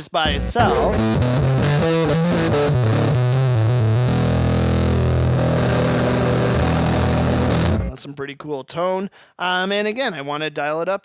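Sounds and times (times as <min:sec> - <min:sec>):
distorted electric guitar: 0:00.3 - 0:08.0.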